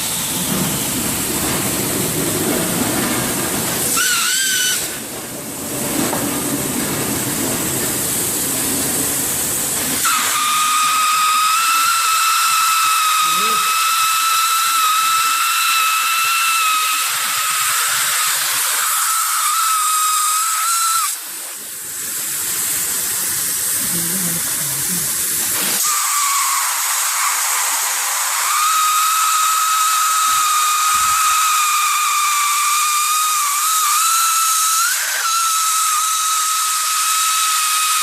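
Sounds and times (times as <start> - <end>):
low machine rumble: 0.0 - 3.9
hot-air blower hissing: 0.0 - 38.0.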